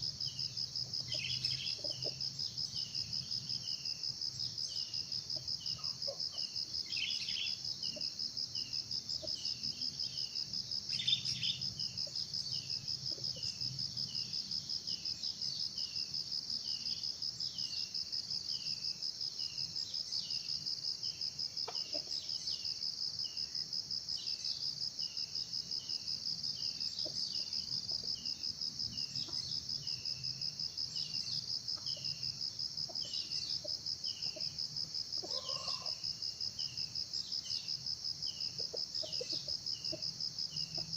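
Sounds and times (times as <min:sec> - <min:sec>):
crickets trilling: 0:00.0 - 0:40.9.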